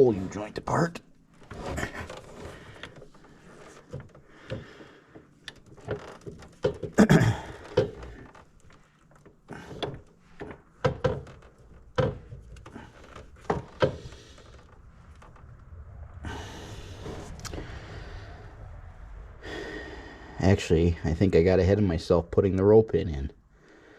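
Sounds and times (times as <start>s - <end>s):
tools and parts knocking: 5.8s - 7.1s, 7.7s - 8.1s, 9.7s - 11.4s, 12.0s - 12.5s.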